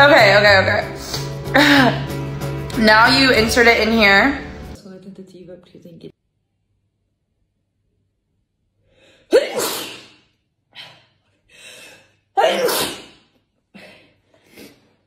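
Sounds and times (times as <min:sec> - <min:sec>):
woman sneezing: 0:09.3 - 0:10.2, 0:12.4 - 0:14.0.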